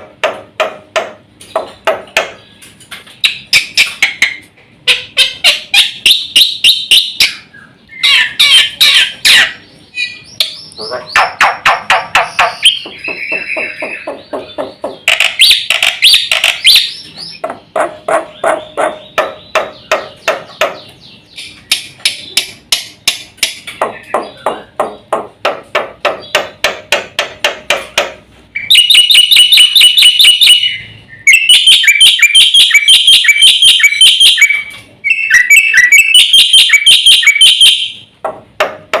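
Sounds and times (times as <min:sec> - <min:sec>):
starling singing: 0:03.2 - 0:22.6, 0:23.7 - 0:25.2, 0:28.6 - 0:38.1.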